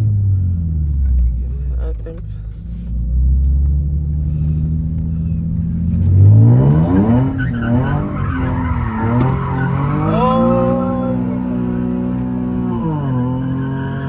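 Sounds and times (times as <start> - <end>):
tires squealing: 5.1 - 14.0
car engine revving hard: 5.6 - 14.0.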